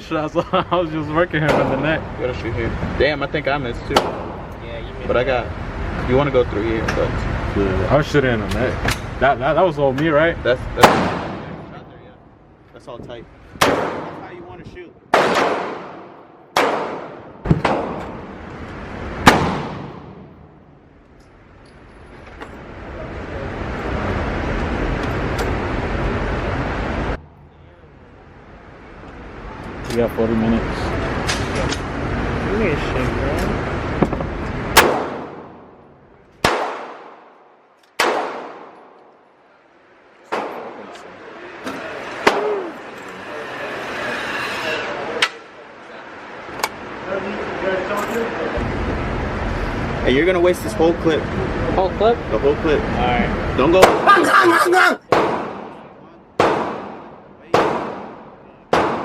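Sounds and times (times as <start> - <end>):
echoing gunshots: 10.8 - 11.7, 13.6 - 14.2, 15.1 - 18.4, 19.2 - 20.6, 34.7 - 35.8, 36.4 - 37.3, 38.0 - 39.0, 40.3 - 40.9, 55.1 - 55.8, 56.4 - 59.0.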